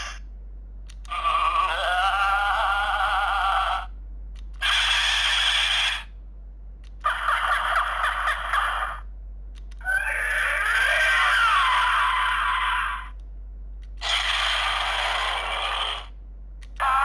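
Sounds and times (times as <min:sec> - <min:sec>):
toy electronic sound effects: 0:04.6 - 0:06.1, 0:14.0 - 0:16.1, 0:16.8 - 0:17.0.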